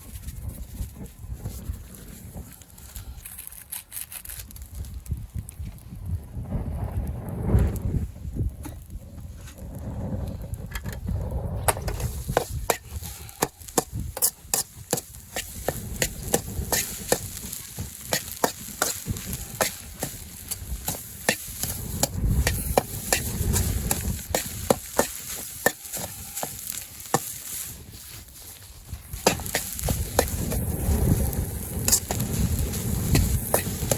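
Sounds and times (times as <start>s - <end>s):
utensil scraping wok: 11.7s - 33.9s
food sizzling: 11.9s - 33.9s.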